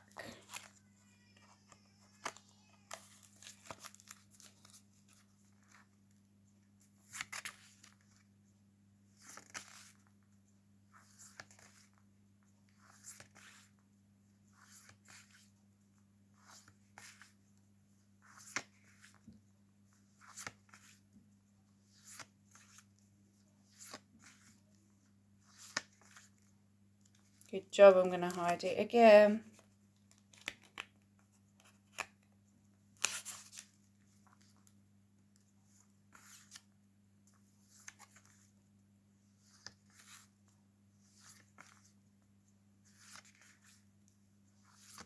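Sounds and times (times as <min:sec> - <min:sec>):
paper cards rustling: 0:00.2 - 0:06.0, 0:09.1 - 0:10.2, 0:11.0 - 0:12.0, 0:16.4 - 0:17.4, 0:18.2 - 0:19.3, 0:25.4 - 0:34.8, 0:35.4 - 0:36.7, 0:37.3 - 0:38.5, 0:42.8 - 0:43.9, 0:44.6 - 0:45.0.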